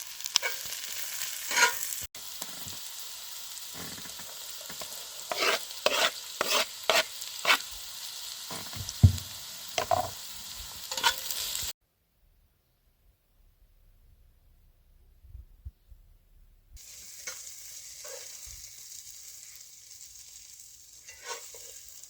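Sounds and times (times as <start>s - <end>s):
food sizzling in a frying pan: 0.0s - 11.8s, 16.8s - 22.0s
utensil scraping a pan: 1.4s - 1.9s, 3.8s - 7.7s, 10.9s - 11.4s, 21.0s - 21.8s
utensil knocking on pan: 8.7s - 10.1s.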